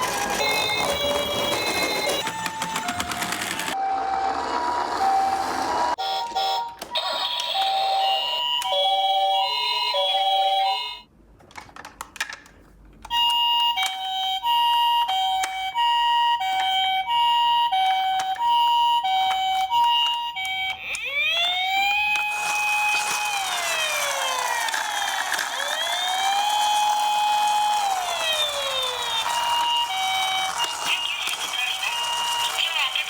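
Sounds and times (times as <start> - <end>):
two-tone ambulance siren: 0.0 - 6.7, 15.8 - 33.0
overlapping wailing sirens: 20.7 - 33.0.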